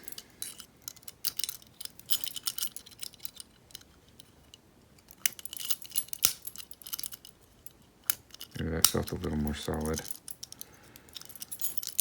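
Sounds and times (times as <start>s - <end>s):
lock picks clicking and scraping: 0.0s - 12.0s
picks jangling on a ring: 8.5s - 12.0s.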